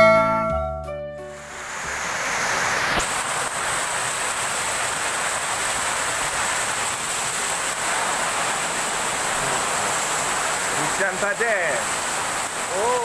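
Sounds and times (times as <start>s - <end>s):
heavy rain hissing: 1.2s - 13.0s.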